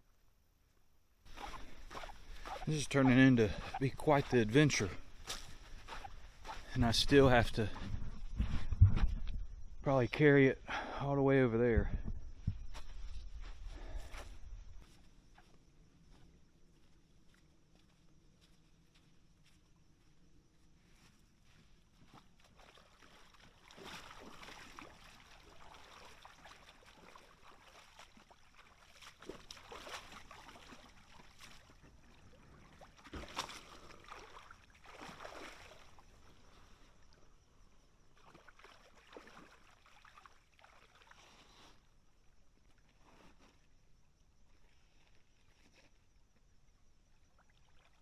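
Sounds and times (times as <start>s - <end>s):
water splashing in a creek: 1.2s - 8.2s, 21.4s - 43.8s, 46.6s - 48.0s.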